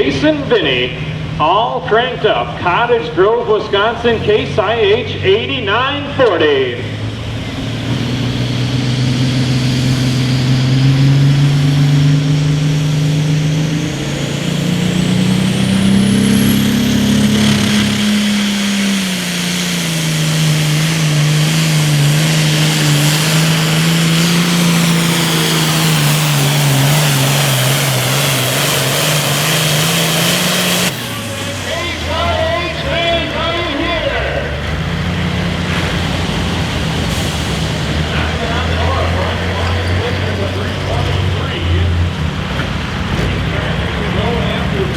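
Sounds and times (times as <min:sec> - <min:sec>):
high whine: 0:00.0 - 0:35.3
tractor diesel engine at full power: 0:00.0 - 0:44.9.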